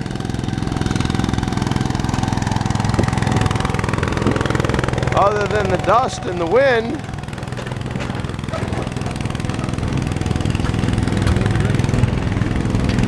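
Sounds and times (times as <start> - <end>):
engine idling: 0.0 - 13.0
wind on microphone: 2.9 - 5.0.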